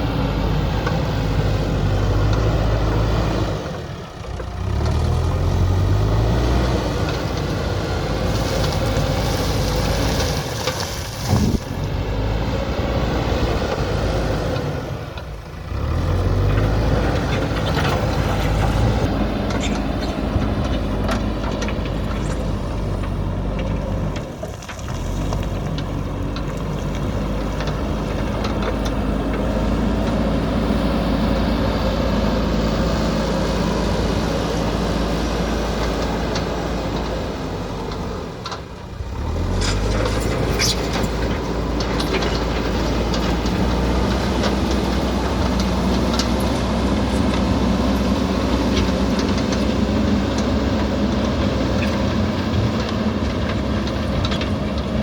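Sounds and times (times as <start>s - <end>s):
diesel engine running: 0.0s - 55.0s.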